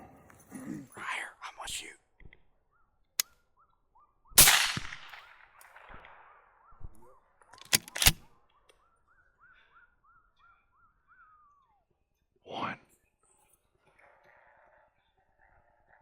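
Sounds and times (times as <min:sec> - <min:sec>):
suppressed rifle shots: 0:04.4 - 0:06.3, 0:07.6 - 0:08.3.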